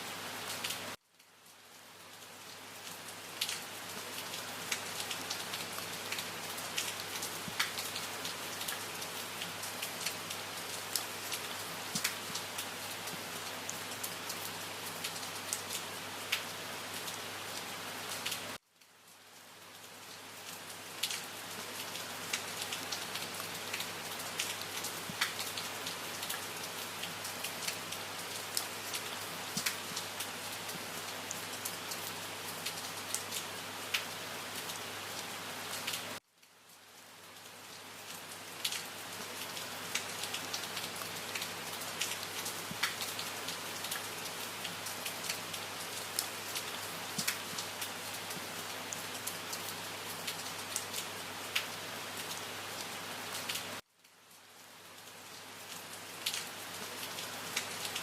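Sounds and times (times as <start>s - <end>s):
steady rain hiss: 0.0s - 58.0s
raindrops ticking: 22.3s - 25.6s, 39.5s - 44.0s, 47.1s - 48.4s.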